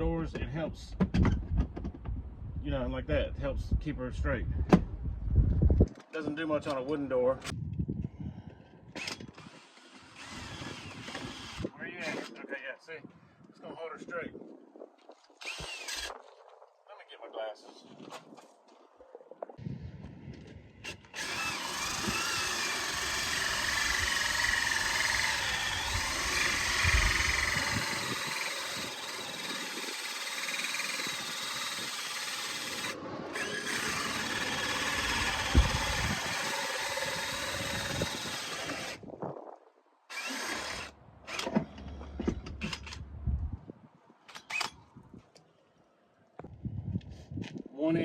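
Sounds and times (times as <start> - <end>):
power drill cutting through steel: 9.0 - 12.3, 15.4 - 16.2, 20.8 - 39.0, 40.1 - 41.5.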